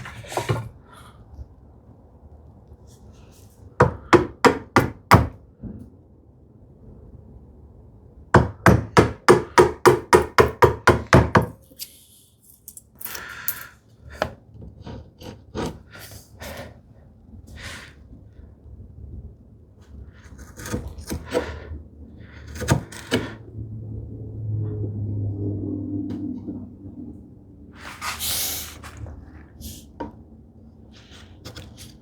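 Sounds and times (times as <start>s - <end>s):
wood scraping: 0.0s - 1.1s.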